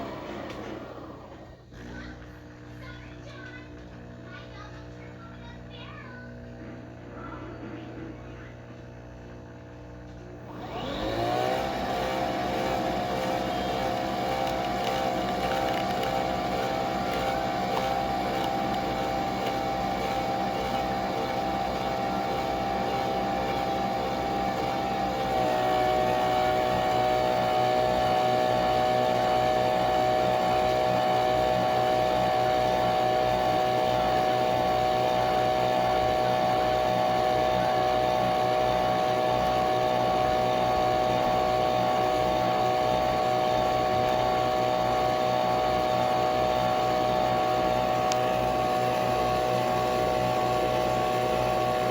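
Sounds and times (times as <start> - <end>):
coffee machine whirring: 0.0 - 51.9.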